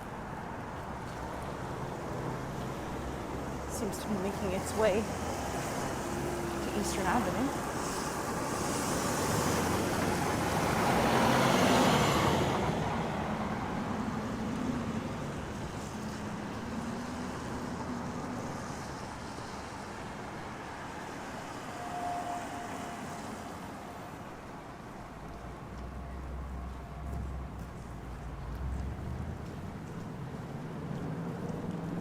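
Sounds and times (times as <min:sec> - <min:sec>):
tyre hiss on wet road: 0:05.1 - 0:12.8
low engine hum: 0:25.4 - 0:32.0.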